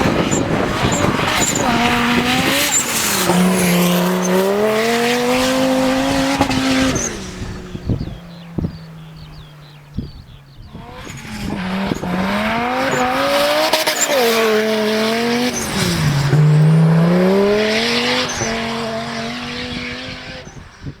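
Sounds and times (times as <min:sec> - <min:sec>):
racing buggy engine accelerating: 0:00.0 - 0:21.0.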